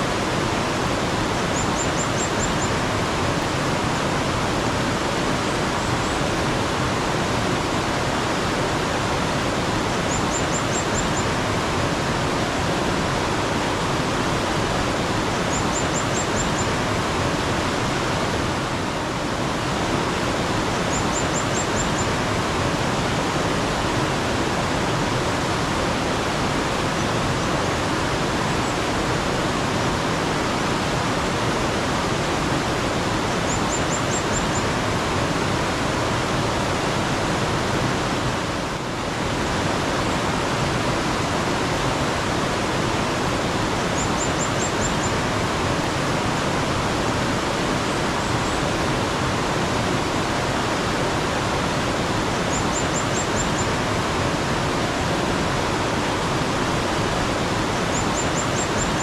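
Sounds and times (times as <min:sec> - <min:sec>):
stream flowing: 0:00.0 - 0:59.0
bird trilling: 0:44.0 - 0:45.1.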